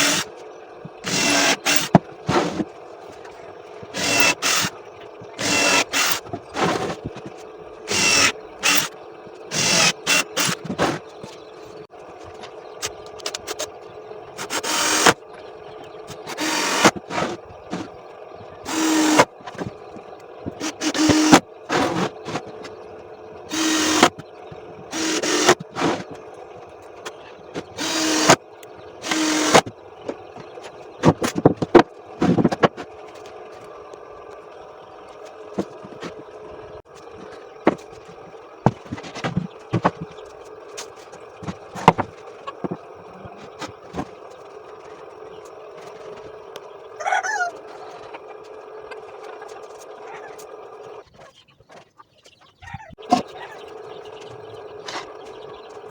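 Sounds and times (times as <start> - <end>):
power drill bursts: 0.0 - 0.3, 1.0 - 2.6, 3.8 - 7.0, 7.9 - 11.0, 14.4 - 15.2, 16.1 - 17.9, 18.6 - 19.7, 20.5 - 22.5, 23.5 - 26.2, 27.6 - 28.4, 29.0 - 29.7
sharp clicks and knocks: 0.0 - 11.5, 12.2 - 34.4, 35.2 - 46.7.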